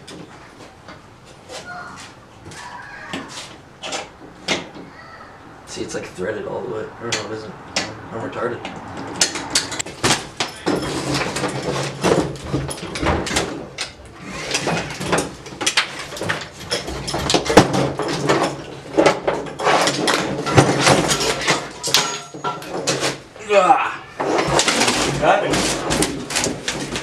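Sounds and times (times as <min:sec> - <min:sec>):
metal tools clanking and scraping: 0:07.0 - 0:23.3, 0:24.1 - 0:27.0.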